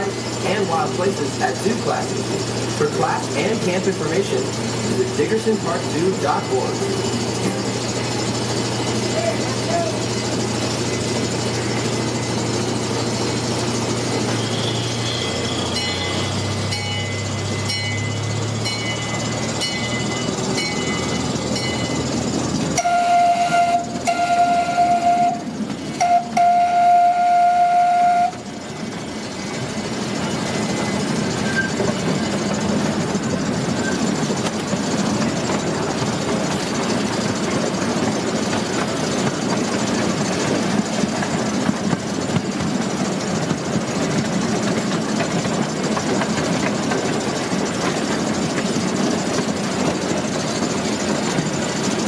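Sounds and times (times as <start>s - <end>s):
small train engine hum: 0.0s - 52.0s
train horn blasts: 22.8s - 28.4s.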